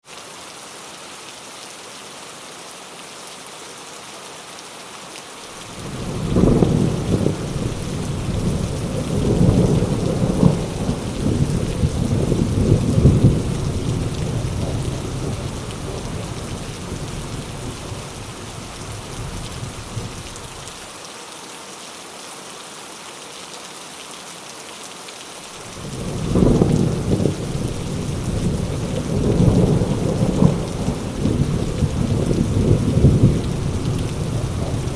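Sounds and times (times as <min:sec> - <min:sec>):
heavy rain falling: 0:00.0 - 0:34.9
thunder rolling: 0:05.7 - 0:20.7, 0:25.7 - 0:34.9.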